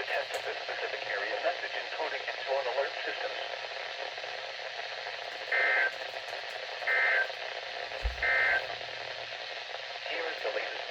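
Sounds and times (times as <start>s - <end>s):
low thump: 8.0s - 8.6s
radio hiss: 8.0s - 8.7s.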